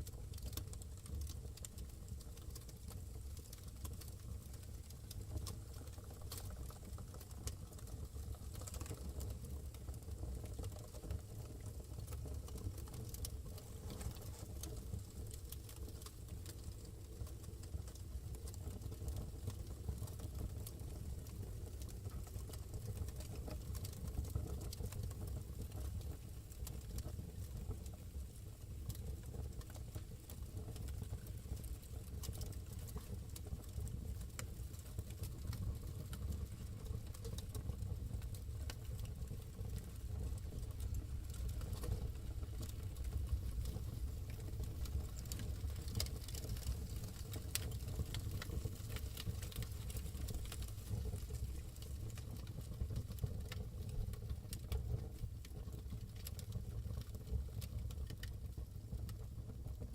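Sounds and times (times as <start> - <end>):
fire crackling and popping: 0.0 - 59.9
fire flames rumbling: 35.0 - 58.2.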